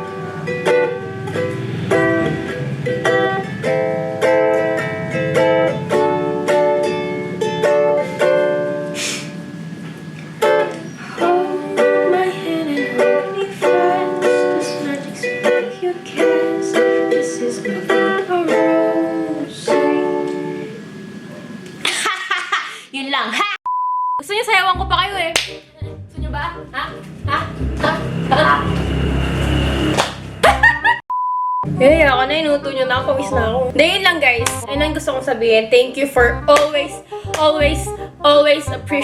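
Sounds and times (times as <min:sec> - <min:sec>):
ukulele chords plucked: 0:00.0 - 0:09.0, 0:10.4 - 0:20.6, 0:31.6 - 0:39.0.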